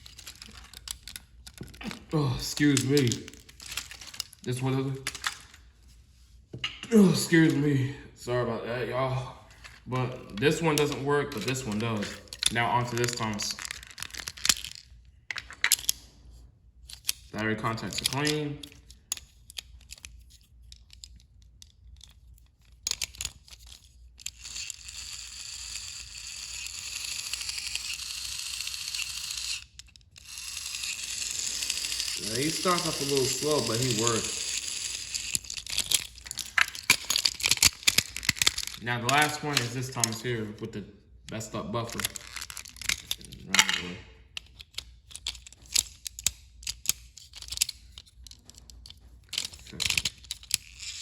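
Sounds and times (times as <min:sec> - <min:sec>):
toy train motor whirring: 0:00.0 - 0:01.8, 0:02.4 - 0:05.6, 0:22.2 - 0:40.5, 0:41.8 - 0:43.4, 0:44.4 - 0:51.0
clicks and taps of toy handling: 0:00.0 - 0:02.0, 0:02.6 - 0:04.4, 0:05.0 - 0:05.6, 0:10.7 - 0:16.0, 0:35.3 - 0:40.3, 0:41.3 - 0:51.0.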